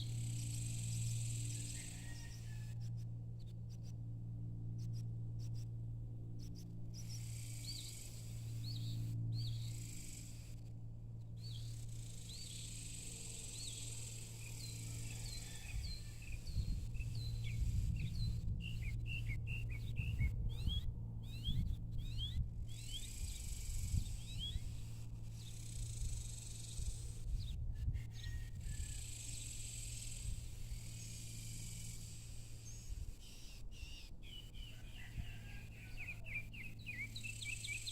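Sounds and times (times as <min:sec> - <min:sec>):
low hum: 0:00.0 - 0:34.7
bird chirping: 0:35.9 - 0:37.9.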